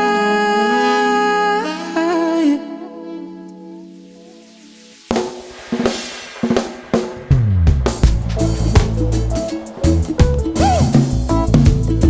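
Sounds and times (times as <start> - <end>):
reggae band playing: 4.9 - 12.0
drum kit fill: 5.0 - 12.0.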